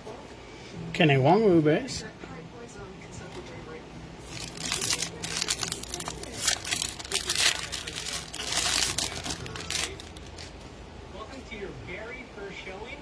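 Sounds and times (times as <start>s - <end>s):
foil wrapper crinkling and tearing: 4.2s - 10.5s.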